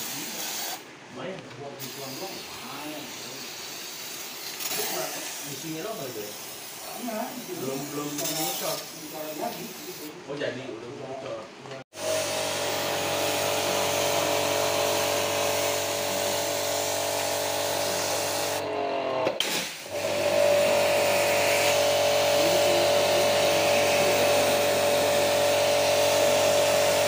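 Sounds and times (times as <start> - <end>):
hiss: 0.0 - 0.8, 1.8 - 10.1
small electric motor whining: 19.9 - 27.0.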